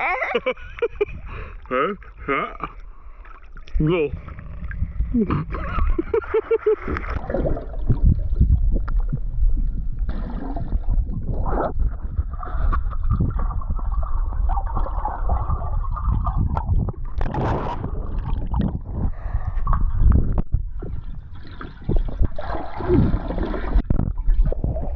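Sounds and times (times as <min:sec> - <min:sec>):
low microphone rumble: 0:03.8 - 0:24.9
pool water splashing: 0:20.9 - 0:23.8.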